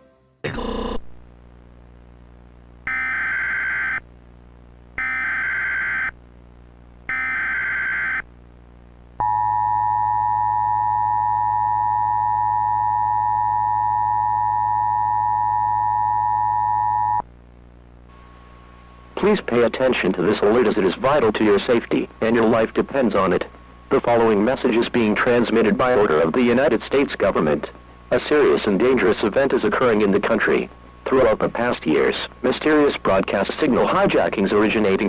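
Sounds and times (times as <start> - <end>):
steady two-tone attention signal: 9.2 - 17.2.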